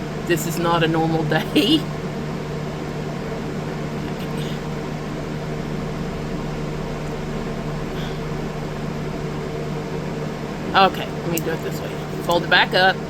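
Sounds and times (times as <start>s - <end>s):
appliance machine hum: 0.0s - 13.0s.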